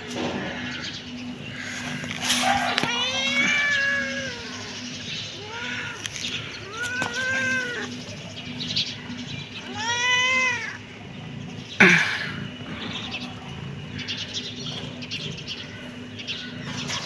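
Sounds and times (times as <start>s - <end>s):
kitten meowing: 2.6s - 4.6s, 5.4s - 7.9s, 9.7s - 10.8s.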